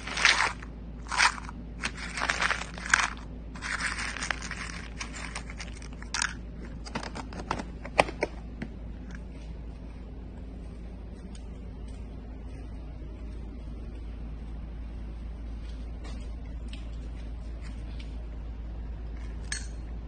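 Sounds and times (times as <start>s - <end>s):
scraping and rustling: 0.0s - 7.3s.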